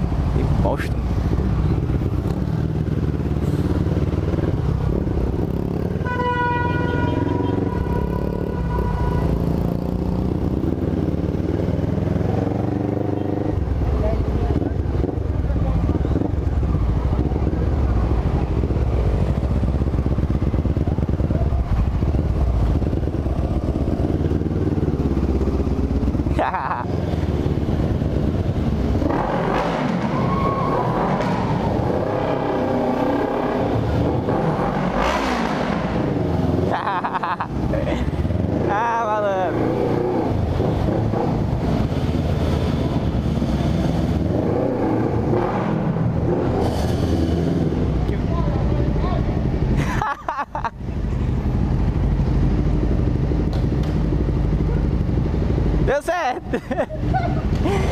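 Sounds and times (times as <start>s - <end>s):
motorcycle engine running: 0.0s - 29.6s, 51.0s - 56.1s.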